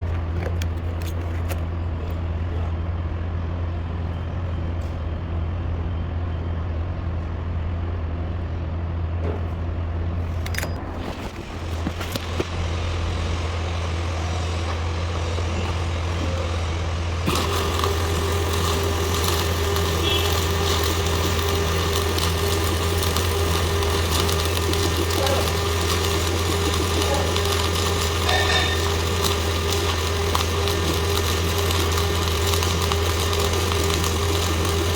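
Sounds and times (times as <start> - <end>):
low machine hum: 0.0 - 34.9
welding arc crackling: 11.4 - 34.9.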